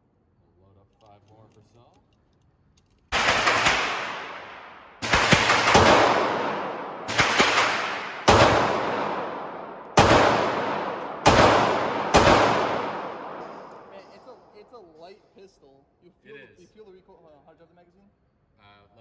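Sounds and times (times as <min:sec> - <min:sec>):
pistol shots with echo: 0:03.1 - 0:14.6.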